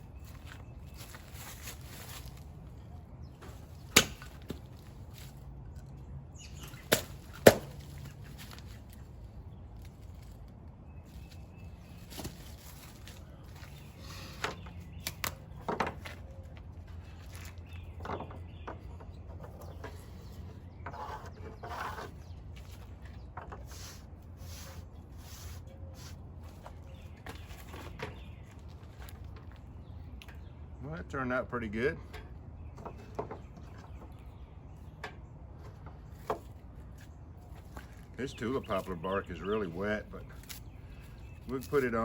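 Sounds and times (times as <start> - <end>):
sticks snapping: 15.0 - 15.4.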